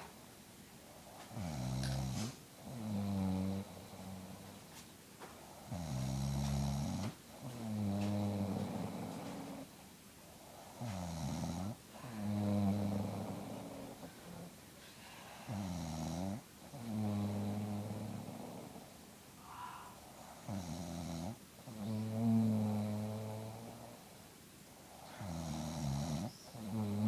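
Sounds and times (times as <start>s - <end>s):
woman snoring: 1.4s - 4.4s, 5.7s - 9.7s, 10.8s - 14.5s, 15.1s - 23.9s, 25.0s - 27.0s.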